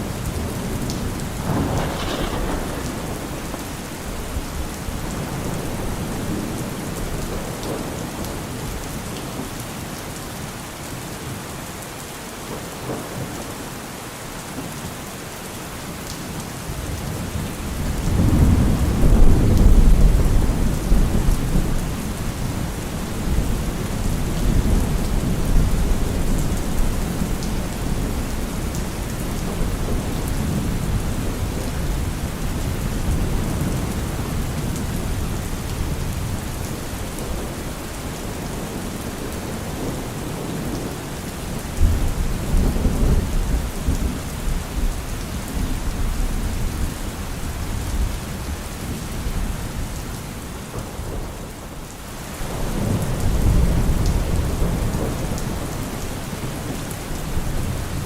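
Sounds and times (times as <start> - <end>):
steady rain falling: 0.0 - 58.0
thunder rolling: 0.4 - 7.9.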